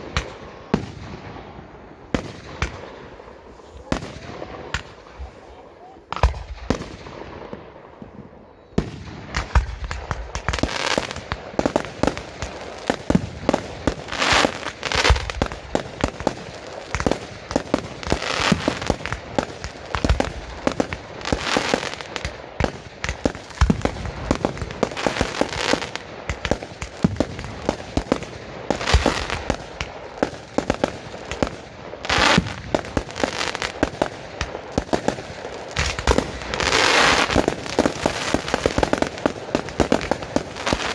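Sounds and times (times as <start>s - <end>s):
fireworks crackling: 0.0s - 40.9s.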